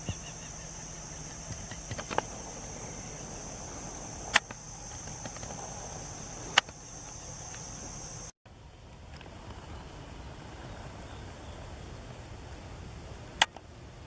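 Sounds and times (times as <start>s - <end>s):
insects trilling: 0.0s - 8.4s
sharp clicks: 6.5s - 7.7s.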